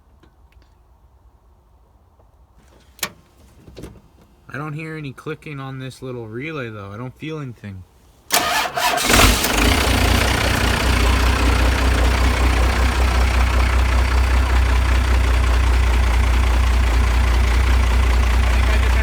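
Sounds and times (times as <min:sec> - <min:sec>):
diesel engine rumbling idle: 0:08.3 - 0:19.0
diesel engine starter cranking: 0:08.3 - 0:19.0.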